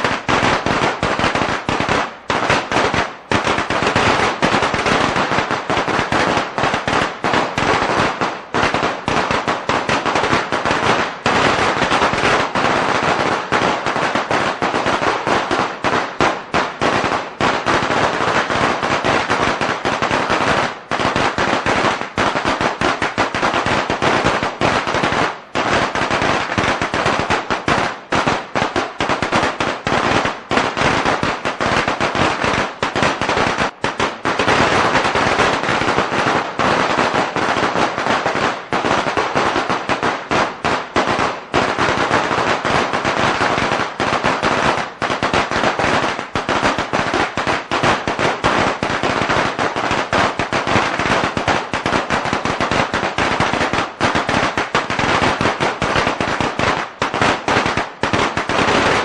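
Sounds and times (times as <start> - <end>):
firecrackers crackling: 0.0 - 59.0.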